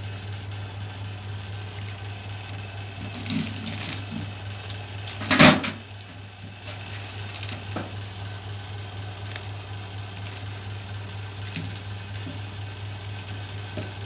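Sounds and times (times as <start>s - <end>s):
low electrical hum: 0.0s - 14.0s
loud clatter: 1.7s - 8.2s.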